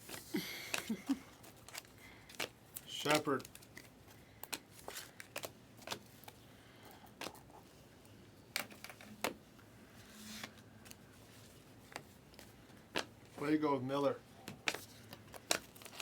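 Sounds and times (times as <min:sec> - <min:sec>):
trading cards clicking and sliding: 0:00.0 - 0:06.4.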